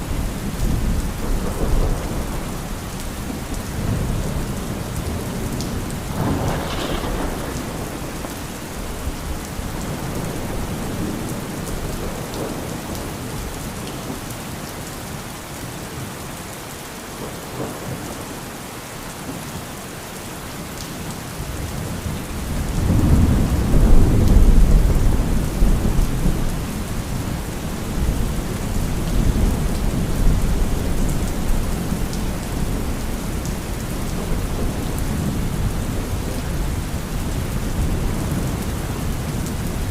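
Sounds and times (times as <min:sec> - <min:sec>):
rolling thunder: 0:00.0 - 0:13.2, 0:22.4 - 0:39.9
heavy rain: 0:00.0 - 0:39.9.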